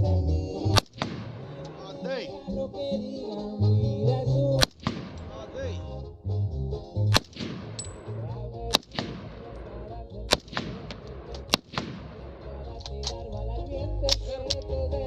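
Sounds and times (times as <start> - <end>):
background music: 0.0 - 15.0
rifle shots with echo: 0.7 - 2.1, 4.6 - 5.7, 7.0 - 12.9
fainter gunshot reports: 0.7 - 2.2, 4.6 - 5.8, 7.0 - 12.7.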